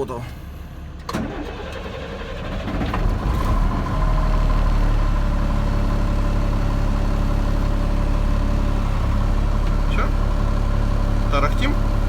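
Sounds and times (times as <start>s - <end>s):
diesel truck engine idling: 0.0s - 12.0s.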